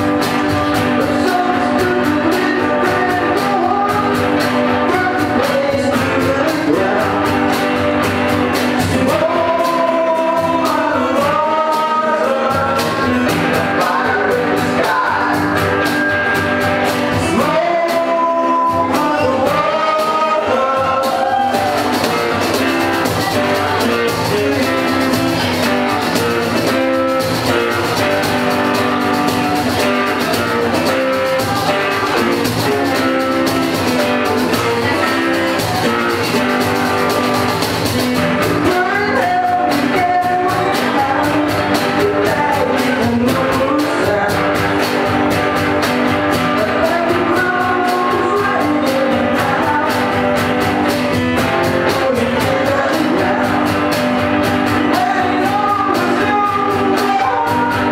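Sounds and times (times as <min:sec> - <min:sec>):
person singing: 0:00.0 - 0:57.9
rock band playing: 0:00.0 - 0:57.9.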